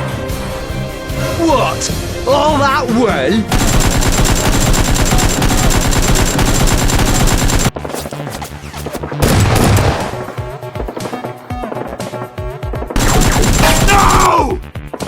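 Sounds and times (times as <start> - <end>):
automatic gunfire: 3.5 - 7.8, 13.0 - 14.3
scattered gunshots: 3.5 - 10.3, 13.0 - 14.4.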